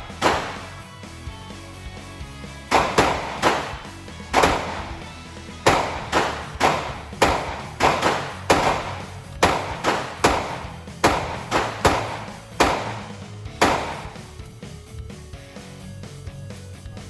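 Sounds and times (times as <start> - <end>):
gunshots: 0.0 - 1.0, 2.7 - 14.4
background music: 0.0 - 17.0.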